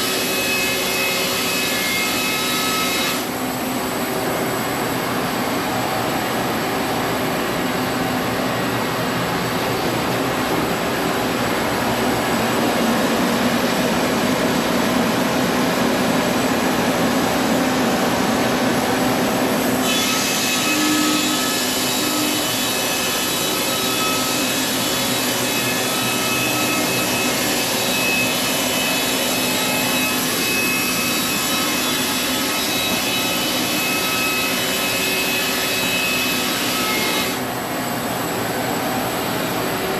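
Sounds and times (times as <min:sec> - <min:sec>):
sawmill cutting wood: 0:00.0 - 0:03.4, 0:17.0 - 0:37.5
high saw whine: 0:15.4 - 0:37.5.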